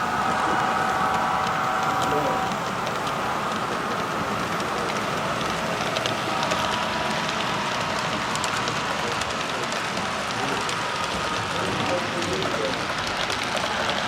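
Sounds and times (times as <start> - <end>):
model trains rolling rumble: 0.0 - 14.0.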